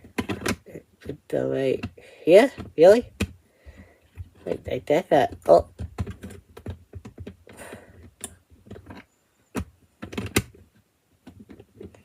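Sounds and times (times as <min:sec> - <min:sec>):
plastic pieces clicking together: 0:05.3 - 0:10.6
plastic pieces snapping: 0:05.3 - 0:10.6.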